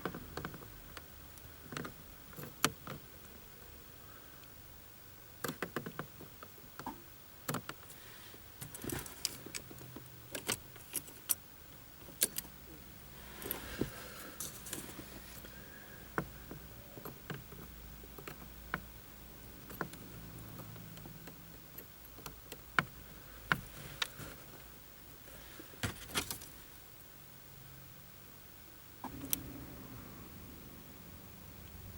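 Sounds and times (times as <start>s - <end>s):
car keys jangling: 8.6s - 11.4s, 13.4s - 15.5s, 25.8s - 26.6s
metal parts clicking: 8.6s - 11.4s, 12.1s - 12.5s.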